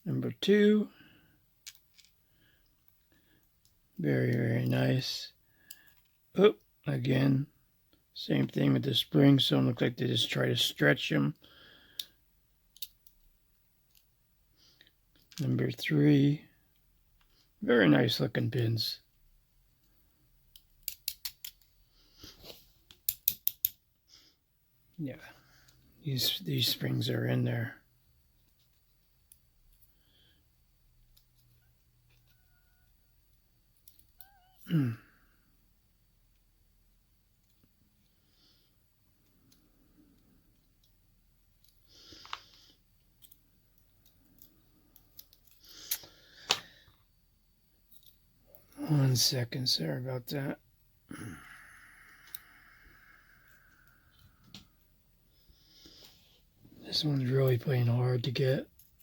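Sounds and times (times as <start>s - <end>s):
metallic clicks of lock parts: 1.6s - 3.8s, 12.0s - 14.1s, 19.8s - 21.7s, 22.9s - 23.8s, 31.0s - 34.4s, 40.5s - 47.0s.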